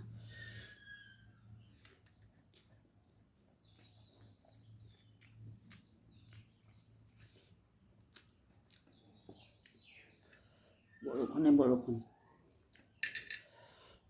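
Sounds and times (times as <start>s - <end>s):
faint bird chirps: 0.1s - 1.9s, 8.6s - 12.4s
chewing and lip smacks: 1.6s - 10.4s, 12.1s - 13.0s.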